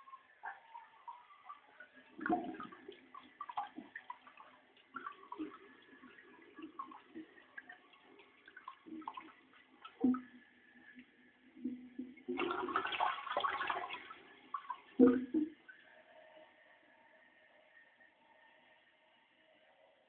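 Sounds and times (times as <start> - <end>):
toilet water running and gurgling: 0.0 - 15.9.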